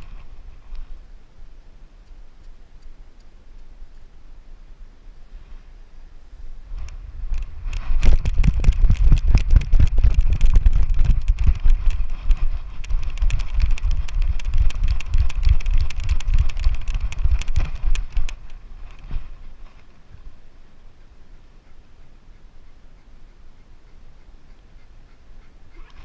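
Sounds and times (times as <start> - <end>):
camera being jostled: 6.8 - 19.2.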